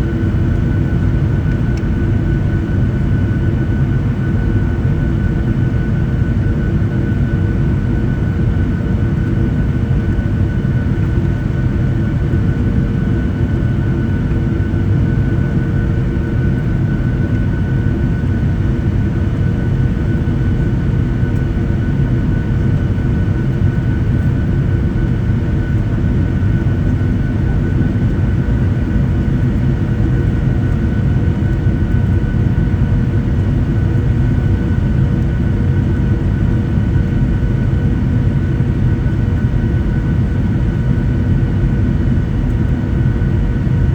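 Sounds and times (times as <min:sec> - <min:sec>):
airplane cabin engine rumble: 0:00.0 - 0:43.9.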